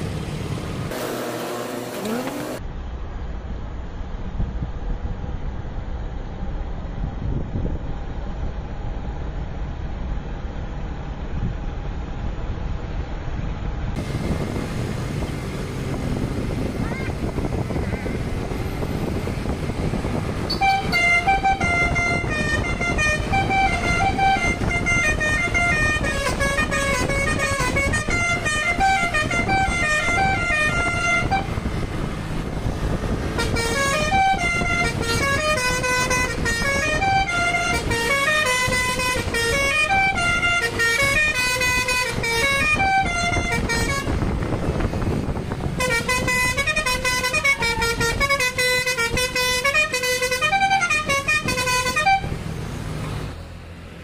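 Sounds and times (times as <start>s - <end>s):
multi-tone bus horn tune: 20.1s - 31.8s, 33.0s - 45.0s, 45.6s - 52.4s.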